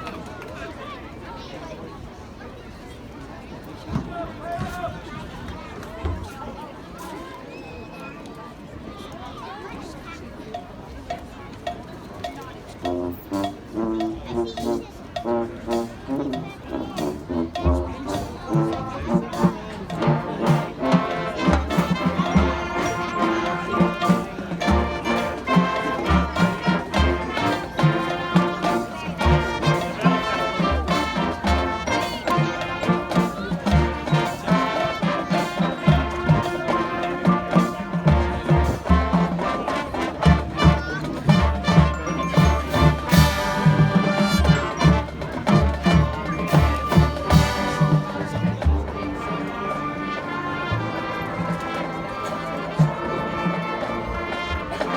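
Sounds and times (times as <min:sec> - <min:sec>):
marching band brass: 0:12.3 - 0:54.9
steady drum beat: 0:12.8 - 0:49.2.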